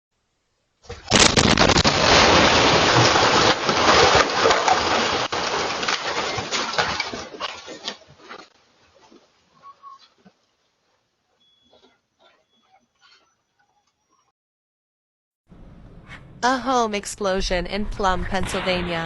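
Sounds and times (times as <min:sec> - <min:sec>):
crackling falling debris: 0:00.9 - 0:08.5
house explosion blast: 0:01.1 - 0:05.8, 0:17.8 - 0:19.0.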